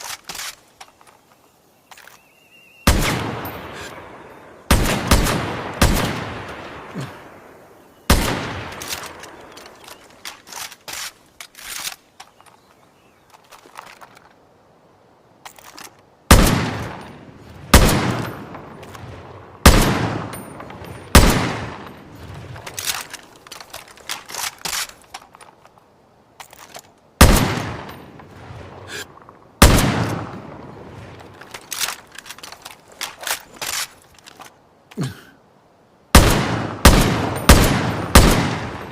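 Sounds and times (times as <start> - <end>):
quiet cracks and clicks: 0.0 - 2.3, 8.6 - 14.4, 20.2 - 35.0
rifle shots with echoing tail: 2.9 - 6.9, 8.1 - 9.2, 16.3 - 22.5, 27.2 - 28.9, 29.6 - 31.2, 36.1 - 38.9.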